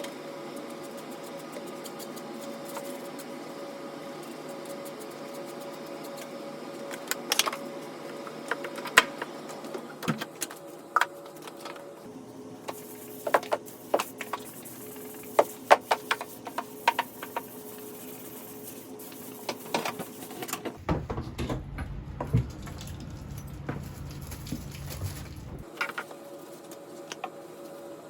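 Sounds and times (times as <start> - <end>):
low rumble: 20.8 - 25.6.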